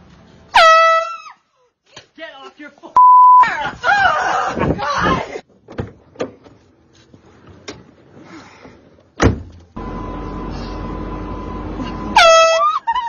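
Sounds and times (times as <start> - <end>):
mechanical hum: 9.4 - 12.2
loud air horn blast: 12.1 - 12.7.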